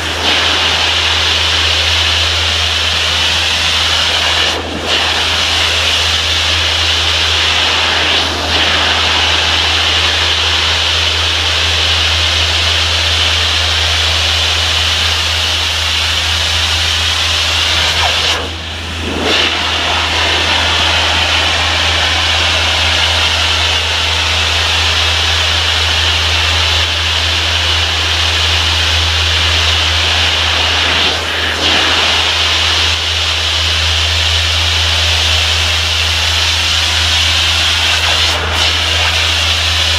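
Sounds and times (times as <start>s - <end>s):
engine humming low: 0.0s - 39.9s
pressure washer spray hissing: 14.6s - 39.9s.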